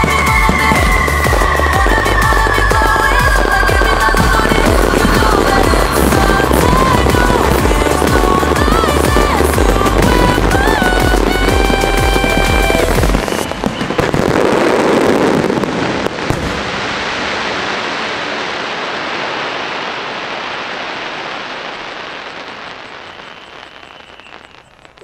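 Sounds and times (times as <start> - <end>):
music with heavy bass: 0.0 - 13.4
dense hiss of fireworks: 0.0 - 25.0
fireworks cracking: 0.0 - 25.0.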